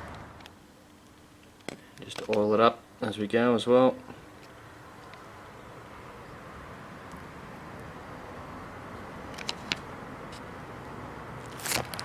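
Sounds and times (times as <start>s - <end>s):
steady background hiss: 0.0s - 12.0s
light clicks of engine parts: 0.1s - 2.5s, 4.1s - 5.3s.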